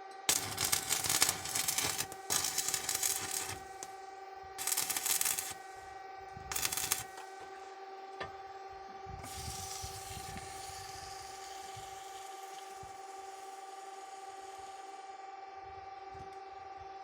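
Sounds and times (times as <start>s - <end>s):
welding machine whine: 0.0s - 17.0s
welding hiss: 0.3s - 4.0s, 4.6s - 5.8s, 6.5s - 7.4s, 9.2s - 15.1s.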